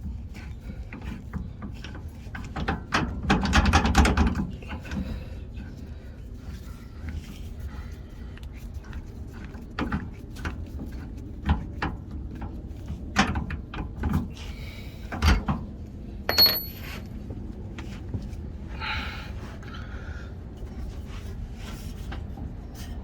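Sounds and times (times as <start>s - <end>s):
metal clanks and knocks: 16.3s - 17.1s.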